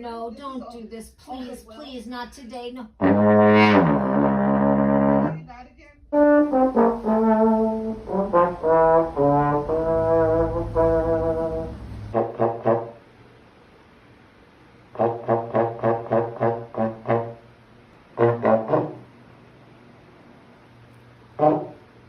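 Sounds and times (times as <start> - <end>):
trombone-like brass notes: 3.0 - 5.4, 6.1 - 13.0, 14.9 - 17.5, 18.2 - 19.1, 21.4 - 21.9.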